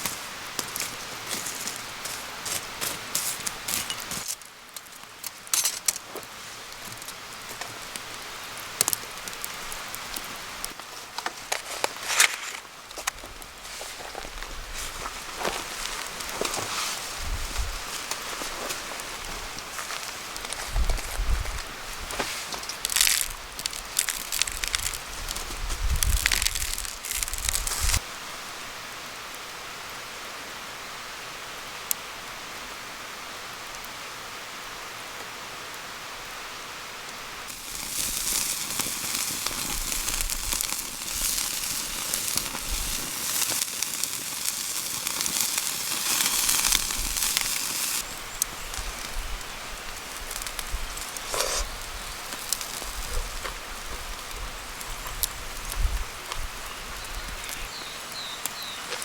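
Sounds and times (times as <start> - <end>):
campfire crackling and popping: 0.0 - 17.2, 17.8 - 28.0, 37.1 - 59.0.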